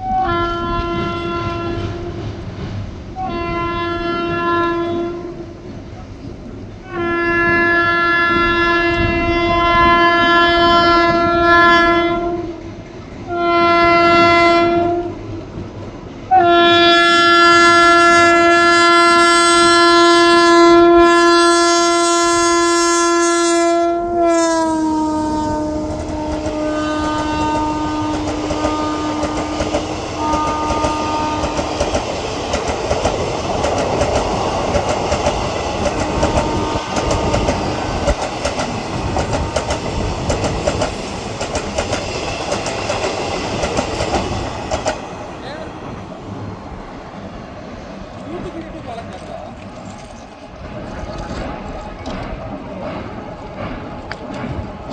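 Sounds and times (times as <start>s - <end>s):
locomotive air horn blasts: 0.0s - 2.2s, 3.2s - 5.6s, 6.8s - 12.6s, 13.3s - 15.2s, 16.3s - 31.8s, 36.0s - 38.0s
train coaches rumbling and clacking: 0.0s - 54.9s.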